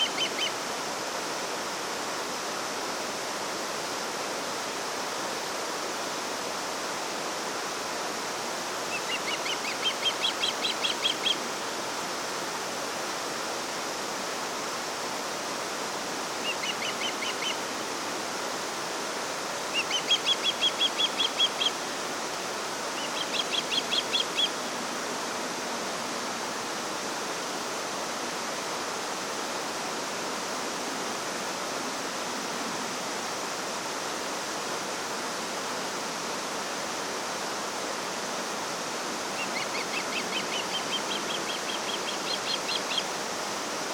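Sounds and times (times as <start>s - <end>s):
songbird trilling: 0.0s - 0.6s, 8.9s - 11.4s, 16.4s - 17.6s, 19.7s - 21.8s, 23.0s - 24.6s, 39.3s - 43.2s
flowing water: 0.0s - 43.9s.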